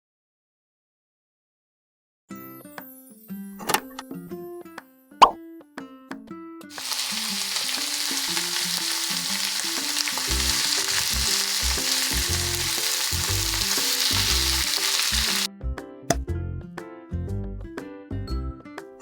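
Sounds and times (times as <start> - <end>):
food sizzling in hot oil: 6.7 - 15.5
simple background tune: 7.9 - 19.0.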